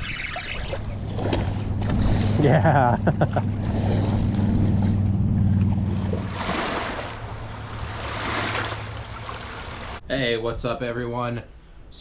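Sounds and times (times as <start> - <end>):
low motor hum: 0.5 - 10.0.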